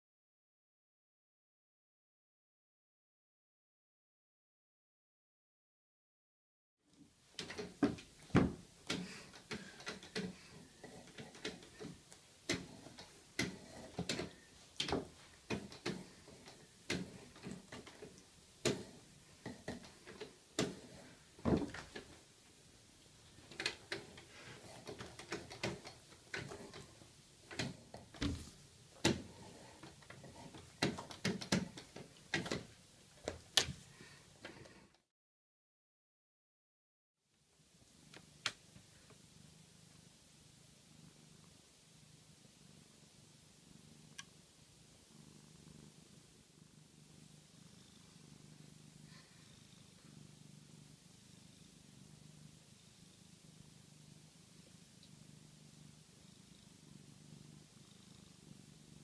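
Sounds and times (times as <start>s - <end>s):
cat scuffling and thrashing: 23.3s - 33.8s.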